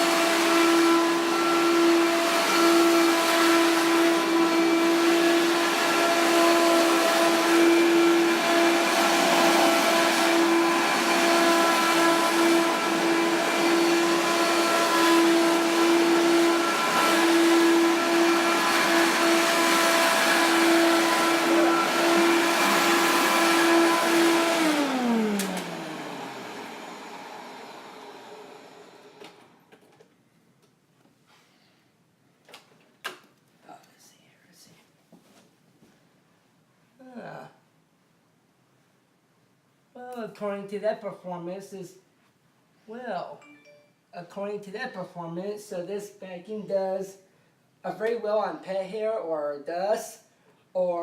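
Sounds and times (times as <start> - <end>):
vacuum cleaner running: 0.0 - 29.7.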